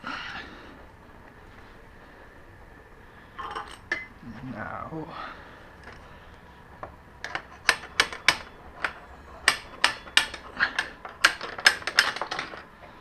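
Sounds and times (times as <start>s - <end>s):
hammer tapping on metal: 7.6s - 12.2s.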